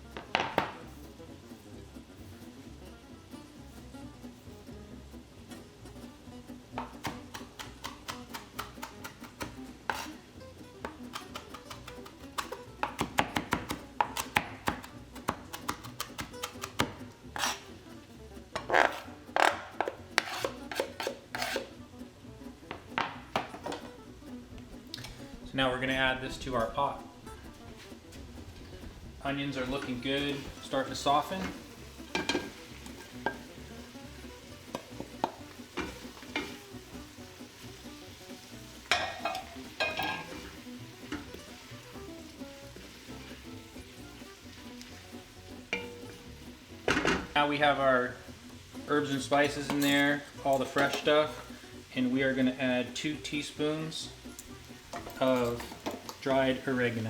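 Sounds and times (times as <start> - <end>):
knife chopping herbs on board: 6.8 - 10.1, 10.8 - 17.6, 18.6 - 21.7
spoon knocking and scraping pot: 7.8 - 10.1, 15.6 - 17.7, 18.6 - 21.7, 29.6 - 37.0, 38.8 - 41.7, 45.6 - 47.4, 49.4 - 51.4, 54.4 - 56.3
knife scraping cutting board: 8.4 - 10.2, 15.9 - 17.7, 18.6 - 21.7
onions sizzling in oil: 30.2 - 47.2, 48.2 - 49.3, 50.2 - 52.0, 54.1 - 55.0.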